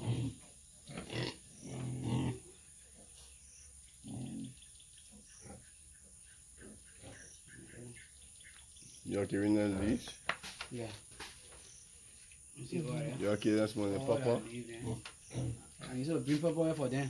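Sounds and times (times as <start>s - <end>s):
pigs grunting: 0.0s - 3.3s, 4.0s - 5.8s, 6.6s - 8.1s, 12.6s - 16.4s.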